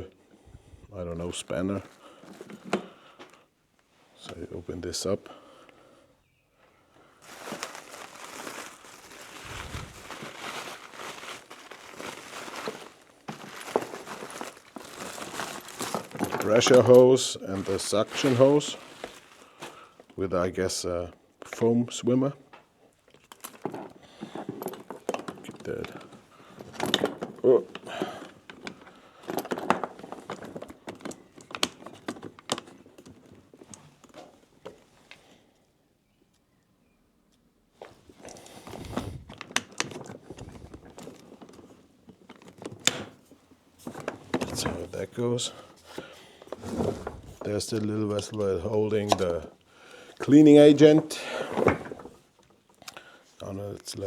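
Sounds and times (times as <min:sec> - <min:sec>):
packaging rustling and crinkling: 0:07.2 - 0:20.2, 0:23.1 - 0:35.0, 0:37.8 - 0:49.5.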